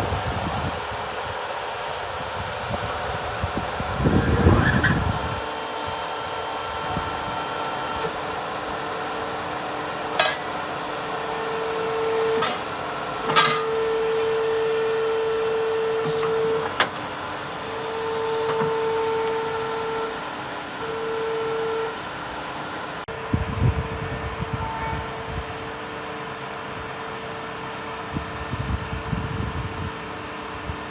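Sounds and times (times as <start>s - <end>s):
demolition robot whining: 11.3s - 20.2s
high hissing: 17.5s - 19.5s.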